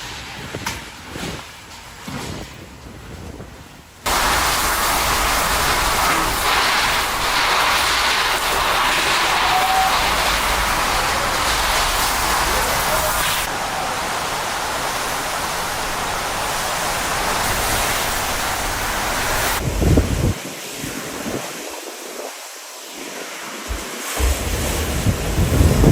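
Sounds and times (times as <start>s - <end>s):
heavy rain: 4.1s - 25.9s
wind rushing: 14.4s - 22.4s, 23.0s - 25.9s
low rumble: 23.7s - 25.9s.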